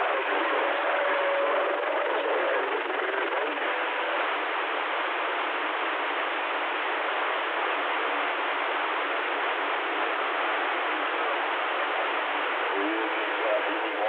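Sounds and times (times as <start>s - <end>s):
radio static hiss: 0.0s - 14.0s.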